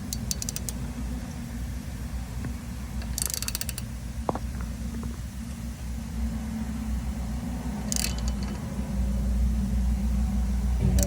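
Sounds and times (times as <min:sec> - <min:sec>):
sharp metal clicks: 0:00.0 - 0:00.8, 0:03.0 - 0:03.9, 0:07.9 - 0:08.6
wrench cranking nut: 0:00.0 - 0:00.8, 0:03.0 - 0:03.9, 0:07.9 - 0:08.6
steady low rumble: 0:03.8 - 0:11.0
metal creaking and clicking: 0:07.9 - 0:08.6.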